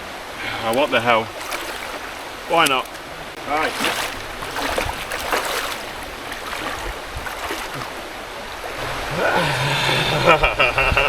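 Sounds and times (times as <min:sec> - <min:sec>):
water rushing over rocks: 0:00.3 - 0:09.1.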